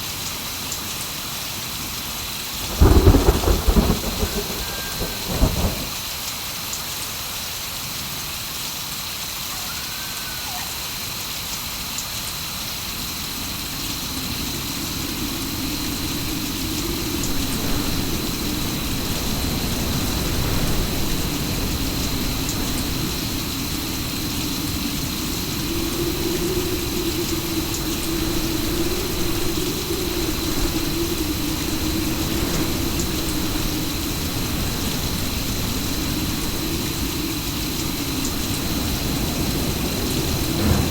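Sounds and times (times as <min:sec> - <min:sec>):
steady rain falling: 0:00.0 - 0:40.9
low wavering drone: 0:14.2 - 0:40.9.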